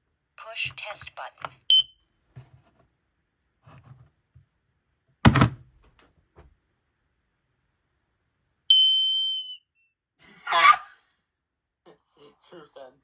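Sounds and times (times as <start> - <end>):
alarm beep: 1.7 - 1.9, 8.7 - 9.6.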